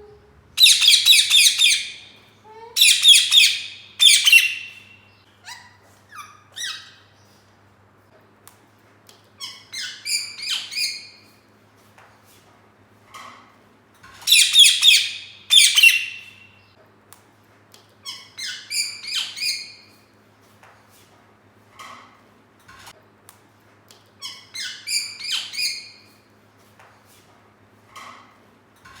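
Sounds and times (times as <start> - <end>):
parrot squawking and chirping: 0.6 - 7.2, 9.4 - 11.2, 14.2 - 16.5, 18.0 - 19.9, 24.2 - 26.1.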